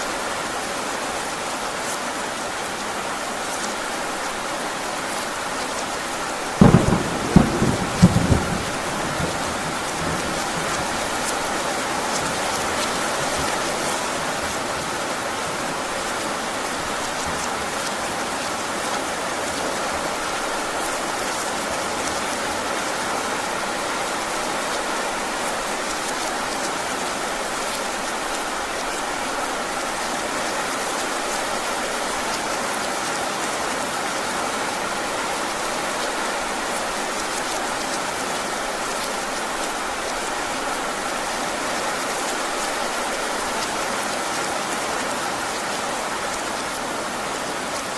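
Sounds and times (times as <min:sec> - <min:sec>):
heavy rain: 0:00.0 - 0:47.9
thunder cracks: 0:06.6 - 0:11.0.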